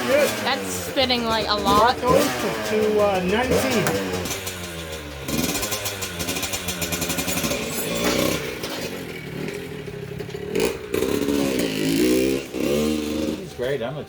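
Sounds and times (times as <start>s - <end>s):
motorcycle engine revving: 0.0s - 14.0s
clattering rattle: 3.6s - 10.4s.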